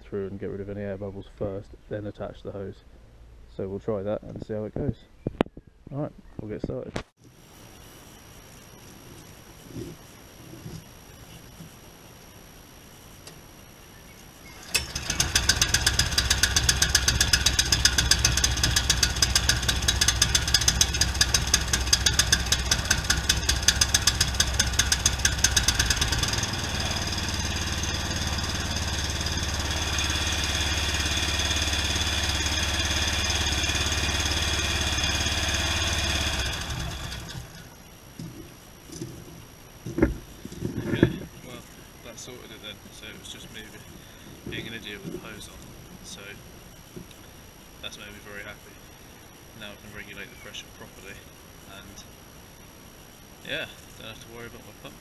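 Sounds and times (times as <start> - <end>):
pressure washer engine running: 14.6 - 37.6.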